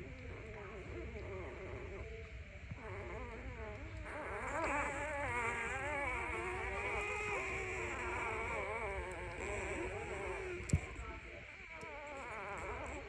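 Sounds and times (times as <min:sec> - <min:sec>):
puppy whining: 0:02.8 - 0:13.0.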